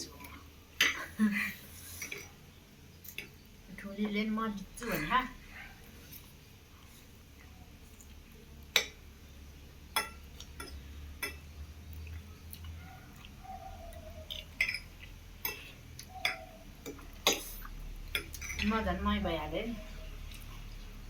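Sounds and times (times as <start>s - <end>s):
low steady hum: 0.0s - 21.0s
utensils clinking against plates: 14.3s - 18.8s.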